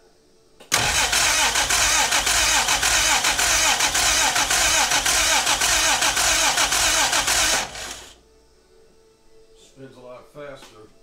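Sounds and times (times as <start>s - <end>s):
car engine being cranked by starter: 0.7s - 8.2s.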